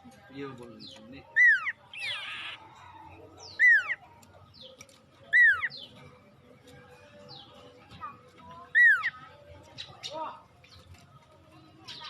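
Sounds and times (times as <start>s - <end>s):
bird whistled calls: 1.4s - 2.6s.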